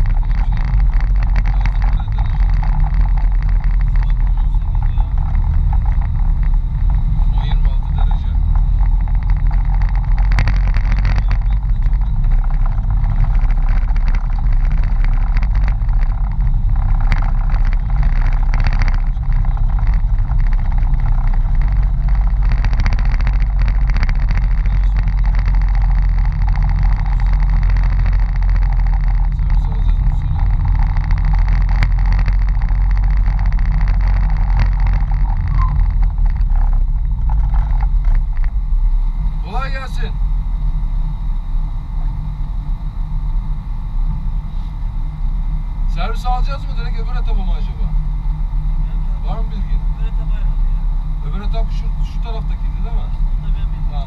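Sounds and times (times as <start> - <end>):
car engine rumbling: 0.0 - 54.0.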